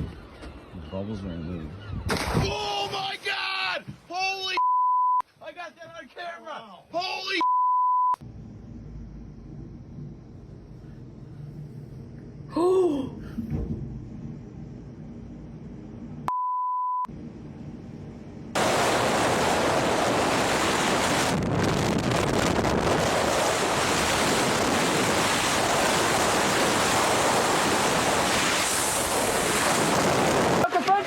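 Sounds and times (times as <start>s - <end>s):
steady beep: 4.6s - 5.2s, 7.4s - 8.2s, 16.3s - 17.1s.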